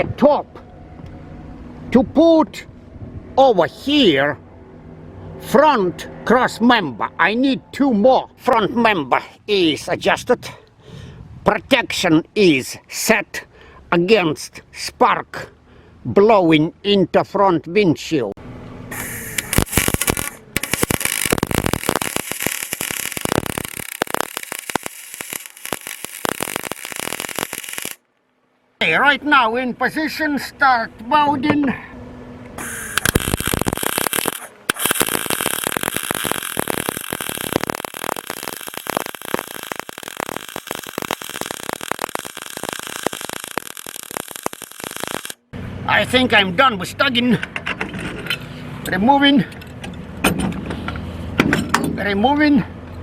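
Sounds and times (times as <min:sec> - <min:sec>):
welding arc crackling: 0:18.9 - 0:28.0, 0:32.6 - 0:45.4.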